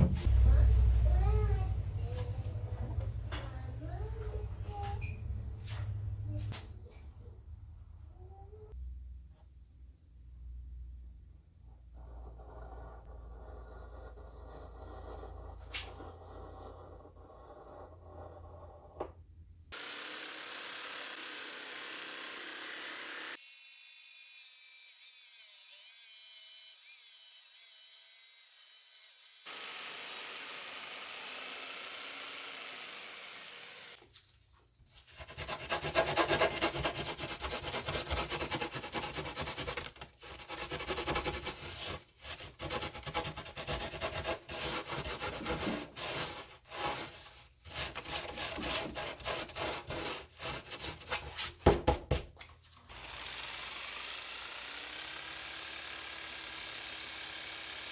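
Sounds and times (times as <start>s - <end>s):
loud fast sanding rasp: 35.1s - 51.6s.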